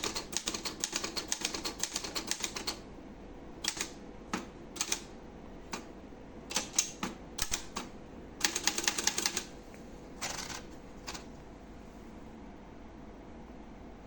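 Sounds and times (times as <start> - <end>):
manual typewriter key strikes: 6.5 - 9.4.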